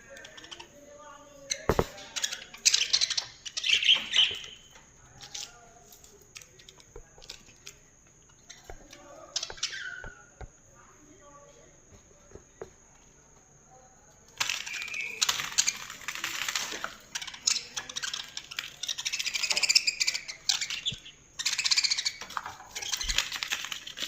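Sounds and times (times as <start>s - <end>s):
budgerigars chattering and warbling: 1.4s - 4.7s, 8.3s - 10.4s, 17.1s - 24.0s.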